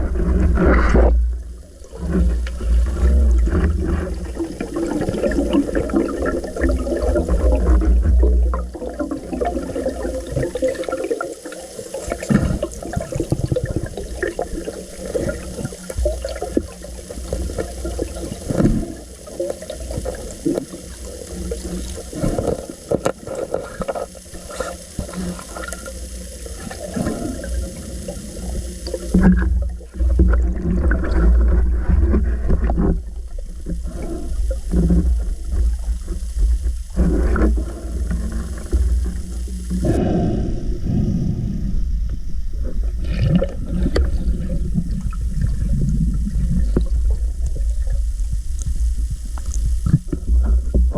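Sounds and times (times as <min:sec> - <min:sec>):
underwater water rumble: 0:00.0 - 0:50.9
water gurgles: 0:00.0 - 0:50.9
underwater clicks: 0:43.0 - 0:50.9.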